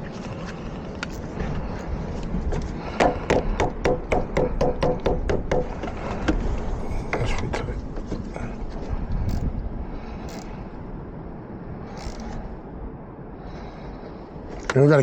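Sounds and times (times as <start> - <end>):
hammer tapping on metal: 3.0 - 5.9.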